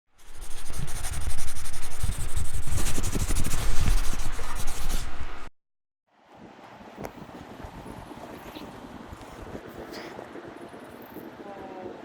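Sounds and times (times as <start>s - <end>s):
close rubbing and scraping: 0.2s - 5.1s.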